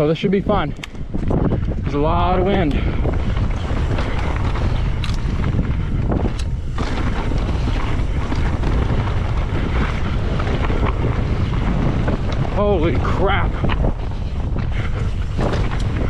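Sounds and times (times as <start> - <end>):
wind buffeting microphone: 0.0 - 16.0.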